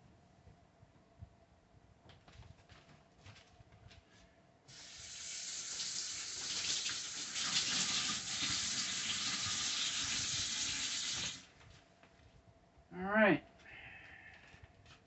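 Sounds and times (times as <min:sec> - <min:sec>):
running water: 0:04.7 - 0:11.5.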